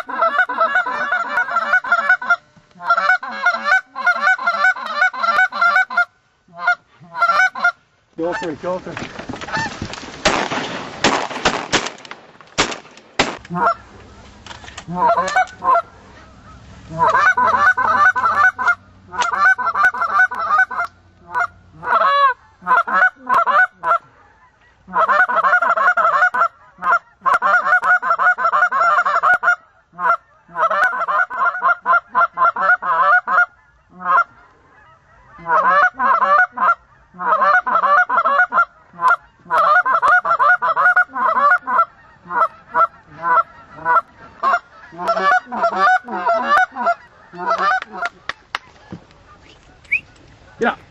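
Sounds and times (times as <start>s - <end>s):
goose honking and clucking: 0.0s - 9.8s, 13.2s - 50.9s
loud rustling: 8.2s - 15.6s.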